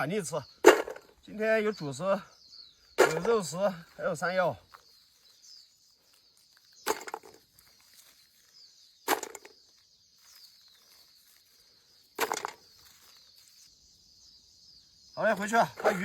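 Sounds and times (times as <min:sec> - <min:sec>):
rustling knocks: 0:00.6 - 0:01.2, 0:03.0 - 0:03.5.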